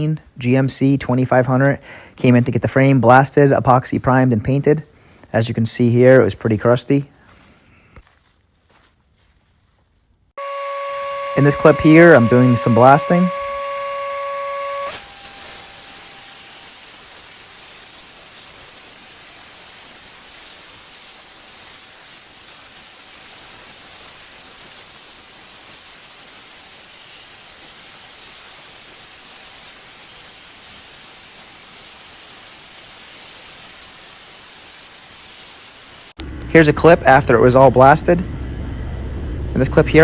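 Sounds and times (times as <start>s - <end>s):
sandblast nozzle hissing: 10.4s - 36.2s.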